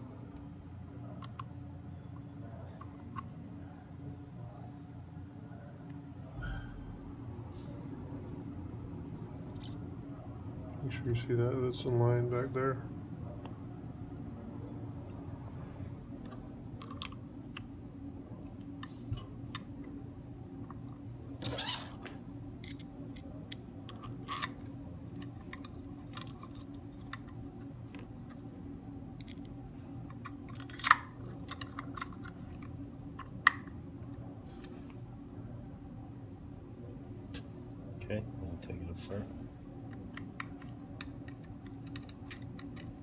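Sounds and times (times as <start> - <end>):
steady low hum: 0.0 - 43.0
small parts clicking and tapping: 22.6 - 28.4, 29.2 - 34.2, 39.8 - 43.0.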